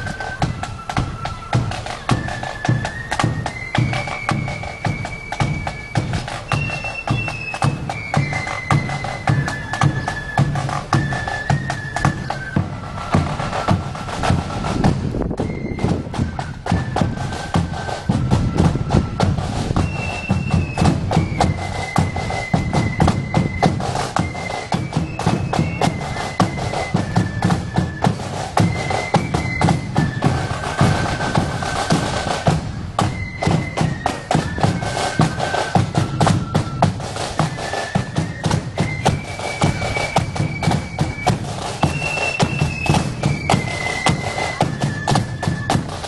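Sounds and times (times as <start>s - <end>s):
marching band playing: 0.0s - 46.0s
rapid snare drumming: 0.0s - 46.0s.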